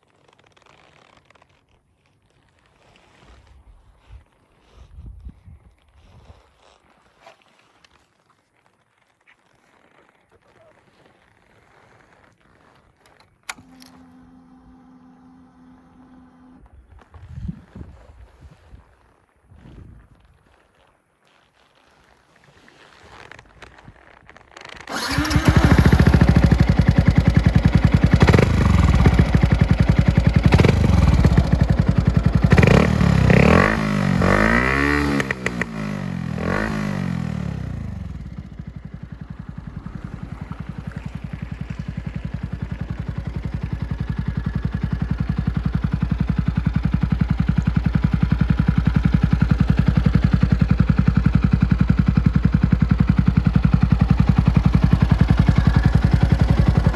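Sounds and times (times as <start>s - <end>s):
motorcycle engine revving and idling: 13.5s - 16.9s, 24.8s - 56.9s.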